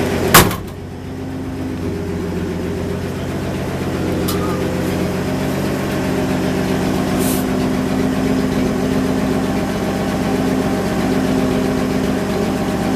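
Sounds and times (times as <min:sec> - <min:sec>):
unmuffled engine idling: 0:00.0 - 0:12.9
brief high hiss: 0:07.2 - 0:07.5.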